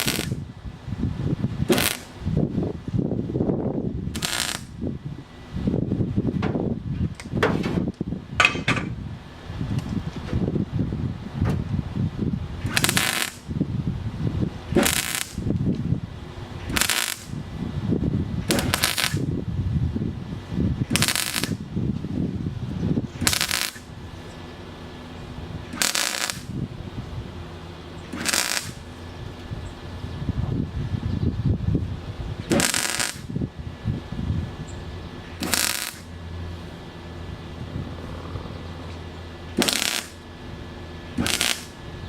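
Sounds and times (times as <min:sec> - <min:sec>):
welding crackling bursts: 0:00.0 - 0:00.4, 0:01.6 - 0:02.2, 0:04.1 - 0:04.8, 0:12.6 - 0:13.5, 0:14.7 - 0:15.6, 0:16.6 - 0:17.4, 0:18.4 - 0:19.3, 0:20.9 - 0:21.7, 0:23.2 - 0:23.9, 0:25.7 - 0:26.6, 0:28.1 - 0:29.0, 0:32.4 - 0:33.4, 0:35.3 - 0:36.1, 0:39.5 - 0:40.3, 0:41.1 - 0:41.8
low rumble: 0:00.0 - 0:42.0.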